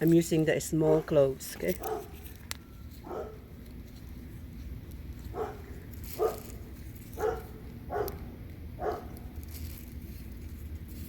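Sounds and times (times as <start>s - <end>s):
dog barking: 1.8s - 2.2s, 3.0s - 3.4s, 5.3s - 6.4s, 7.2s - 8.2s, 8.8s - 9.2s.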